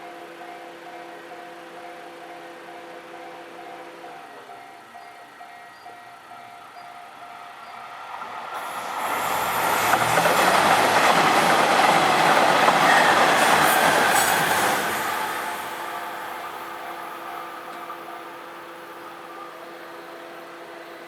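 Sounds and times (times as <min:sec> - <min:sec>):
train passing over rails: 0:00.1 - 0:21.0
level crossing warning bell: 0:00.2 - 0:08.0, 0:14.6 - 0:19.8.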